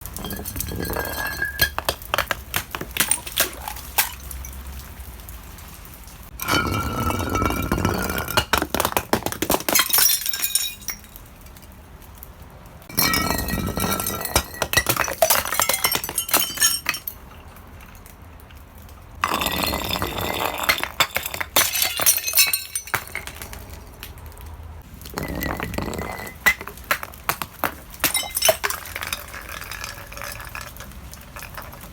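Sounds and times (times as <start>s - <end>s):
glass breaking: 0.0s - 4.6s, 6.4s - 11.1s, 12.9s - 18.0s, 19.2s - 23.8s, 25.1s - 30.6s
glass shards tinkling: 0.1s - 2.3s, 13.0s - 17.2s, 20.7s - 23.5s.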